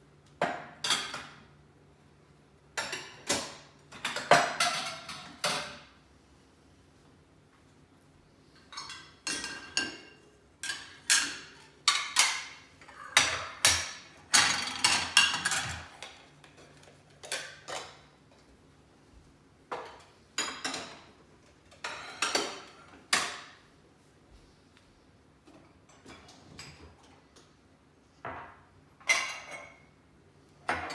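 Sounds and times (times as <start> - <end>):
dishes and cutlery clinking: 2.8 - 6.0, 8.6 - 18.5, 19.7 - 23.6, 28.3 - 30.0.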